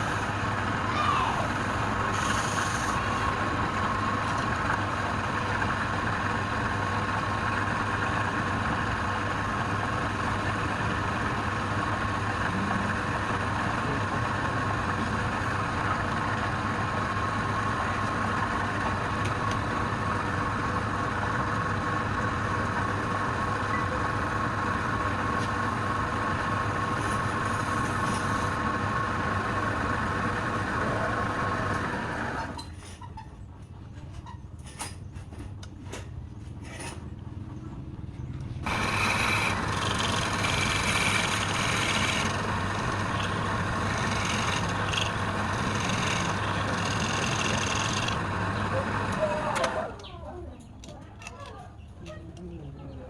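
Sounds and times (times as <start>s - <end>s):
wood lathe motor humming: 38.6s - 49.8s.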